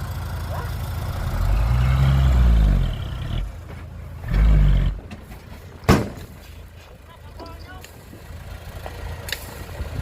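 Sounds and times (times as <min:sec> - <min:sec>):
diesel engine revving: 0:00.0 - 0:05.4.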